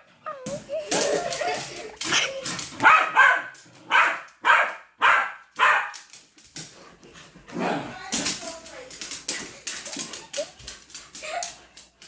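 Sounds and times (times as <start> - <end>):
dog barking: 2.8 - 6.0.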